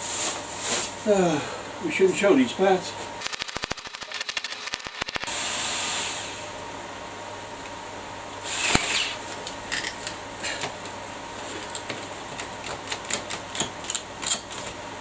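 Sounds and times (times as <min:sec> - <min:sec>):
scrape: 0:00.0 - 0:01.0.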